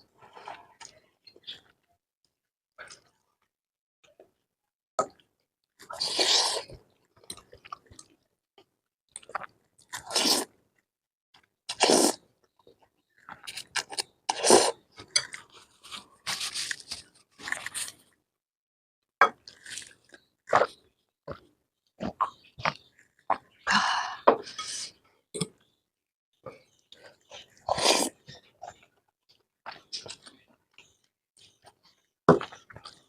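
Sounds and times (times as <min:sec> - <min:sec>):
chewing and slurping noodles: 0:05.8 - 0:08.3, 0:09.1 - 0:10.6, 0:11.7 - 0:18.1, 0:26.5 - 0:33.0.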